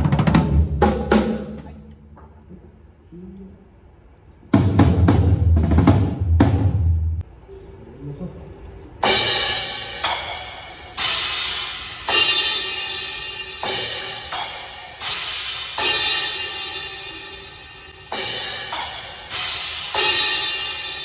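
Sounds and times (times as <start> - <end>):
crash cymbals ringing: 9.0 - 21.0.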